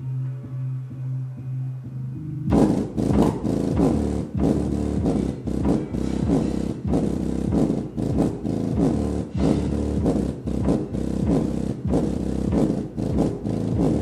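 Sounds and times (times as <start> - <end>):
bass-heavy electronic music: 0.0 - 14.0.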